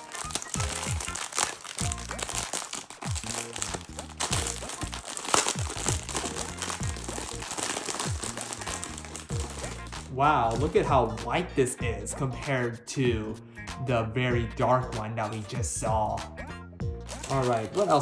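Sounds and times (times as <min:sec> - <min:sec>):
plastic wrapping crinkling: 0:00.0 - 0:10.8, 0:17.0 - 0:18.0
background music with bass line: 0:00.1 - 0:18.0.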